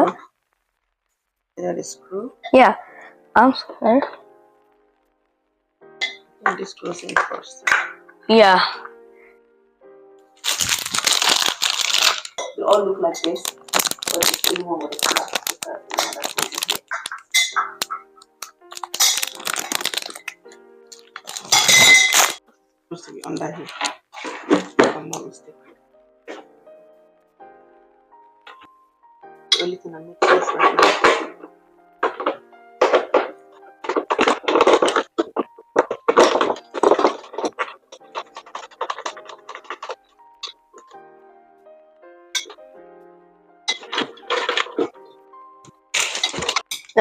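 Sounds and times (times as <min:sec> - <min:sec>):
faint music tones: 0:00.0 - 0:47.0
plastic parts clicking and rustling: 0:10.4 - 0:22.4, 0:32.0 - 0:40.9, 0:43.7 - 0:45.0, 0:45.7 - 0:47.0.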